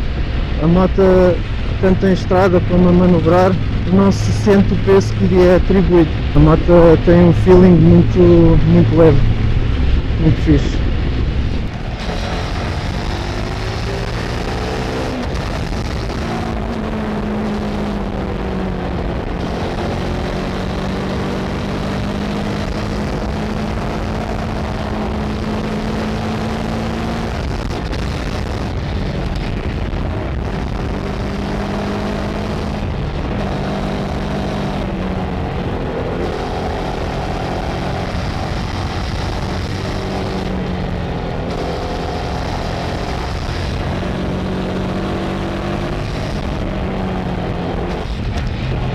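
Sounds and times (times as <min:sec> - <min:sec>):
motorcycle engine accelerating: 0:00.0 - 0:48.9
wind noise: 0:22.3 - 0:48.9.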